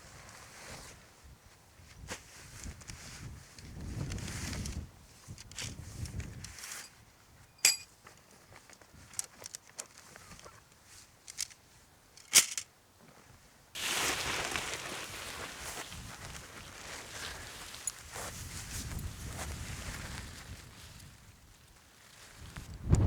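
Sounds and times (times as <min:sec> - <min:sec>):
metallic clicks and clinks: 0:07.6 - 0:07.9, 0:12.2 - 0:12.7
loud rustle: 0:13.8 - 0:21.0.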